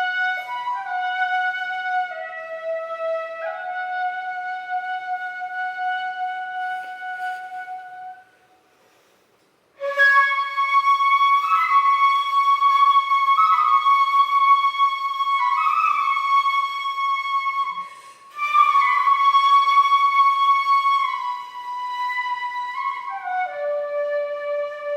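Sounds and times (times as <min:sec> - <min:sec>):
bamboo flute playing: 0:00.0 - 0:08.6, 0:09.8 - 0:24.9
player breathing: 0:08.7 - 0:09.5.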